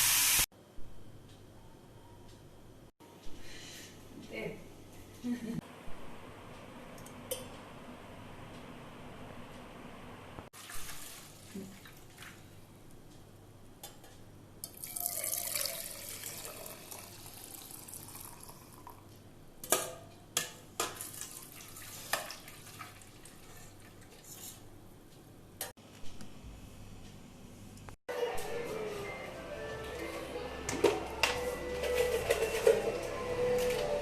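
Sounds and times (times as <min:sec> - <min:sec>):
liquid pouring into vessel: 0:14.6 - 0:19.0.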